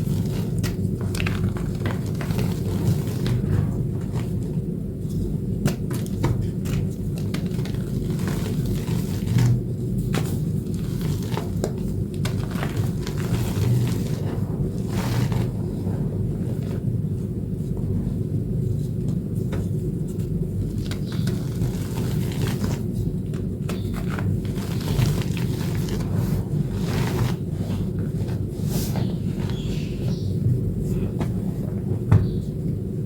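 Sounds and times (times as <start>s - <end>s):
steady low rumble: 0.0s - 33.0s
chalk crunching: 5.7s - 15.8s, 20.1s - 28.0s.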